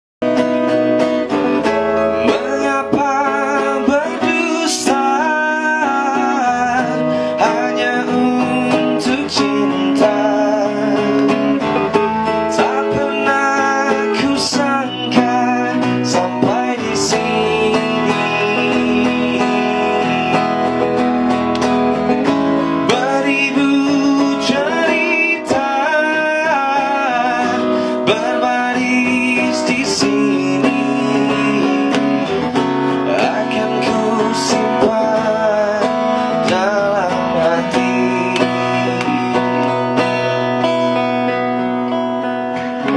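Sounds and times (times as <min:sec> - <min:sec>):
man singing with vibrato: 0:00.2 - 0:21.4, 0:22.2 - 0:42.9
guitar accompaniment: 0:00.2 - 0:42.9.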